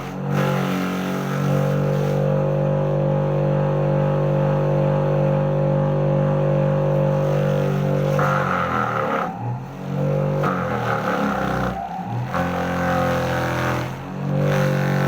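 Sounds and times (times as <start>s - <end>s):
rough noisy chopping sound: 0.0s - 2.6s, 7.0s - 15.0s
electric motor humming: 0.0s - 15.0s.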